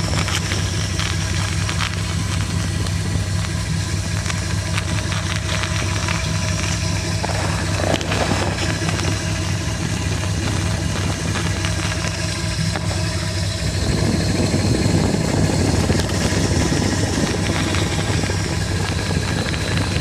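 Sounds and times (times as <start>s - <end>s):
faint irregular ticking: 0.0s - 14.6s.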